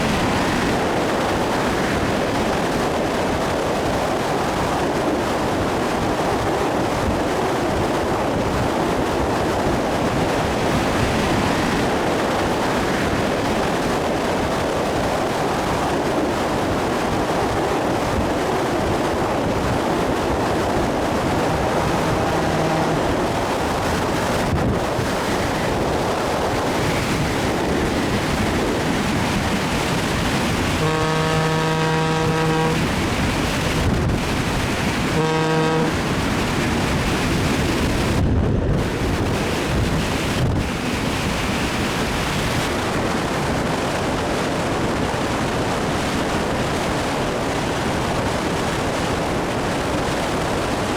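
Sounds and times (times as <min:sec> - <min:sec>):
train wheels on rails: 0:00.0 - 0:50.9
locomotive horn: 0:19.7 - 0:24.6, 0:30.5 - 0:33.9, 0:35.0 - 0:36.3.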